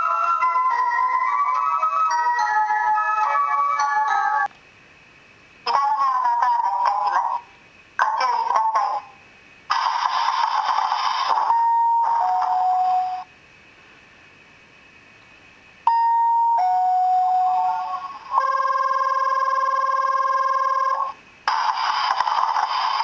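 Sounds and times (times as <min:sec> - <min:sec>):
hiss from small speaker: 0:07.0 - 0:11.6, 0:21.2 - 0:23.0
buzzy ringing tone: 0:09.7 - 0:13.3, 0:15.8 - 0:23.0.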